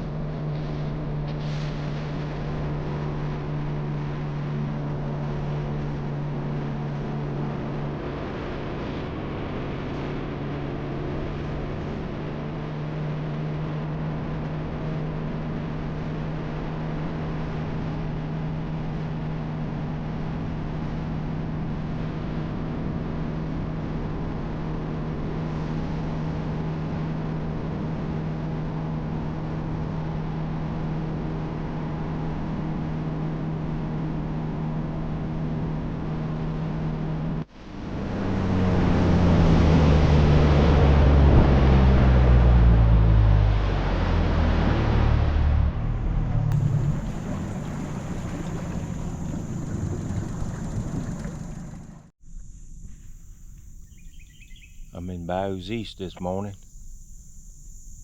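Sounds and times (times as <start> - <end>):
outboard motor running: 46.5 - 52.1
water wash: 46.5 - 52.1
wind noise: 46.5 - 52.1.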